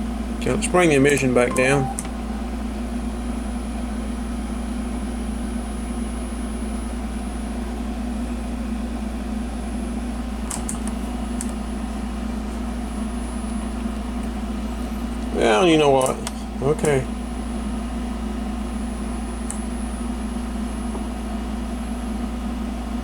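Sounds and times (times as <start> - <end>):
machine humming: 0.0 - 7.3.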